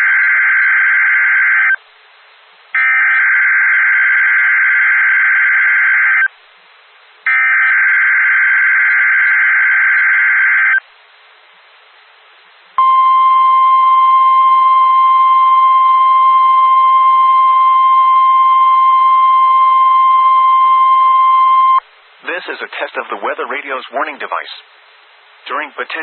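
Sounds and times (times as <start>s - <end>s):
two-pitch data tone bursts: 12.8s - 21.8s.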